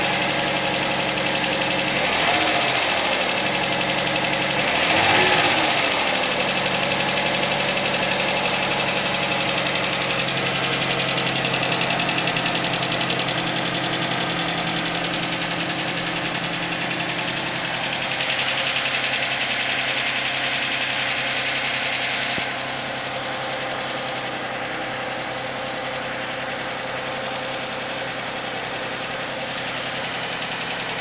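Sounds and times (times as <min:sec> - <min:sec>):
engine idling with rapid knocking: 0:00.0 - 0:31.0.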